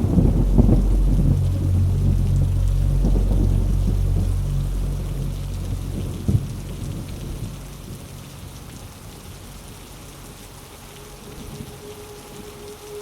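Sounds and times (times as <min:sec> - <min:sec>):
thunder clap and rumble: 0:00.0 - 0:09.8
low ambient drone: 0:00.0 - 0:13.0
steady rain: 0:00.0 - 0:13.0.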